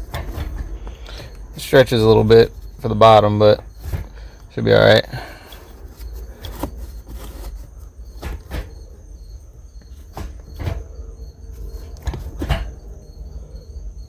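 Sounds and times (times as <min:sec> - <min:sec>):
crickets chirping: 0:00.0 - 0:14.0.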